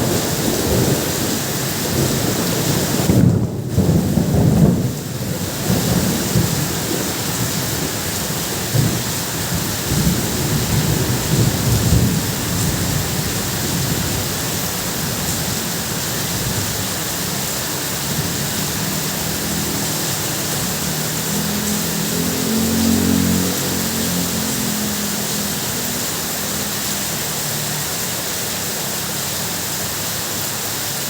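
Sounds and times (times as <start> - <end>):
low thunder rumbling: 0.0 - 17.1
heavy rain on a tin roof: 0.0 - 31.0.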